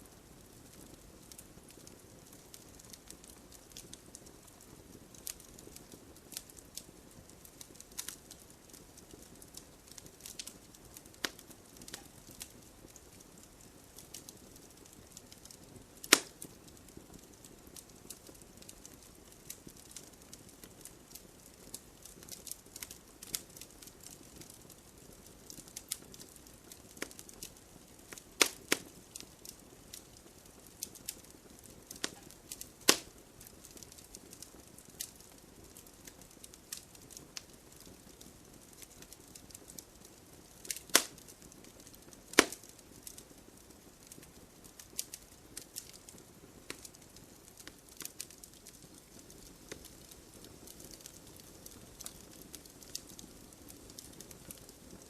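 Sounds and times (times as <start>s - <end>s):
wood fire crackling: 0.0s - 55.0s
loud fire cracks: 0.4s - 55.0s.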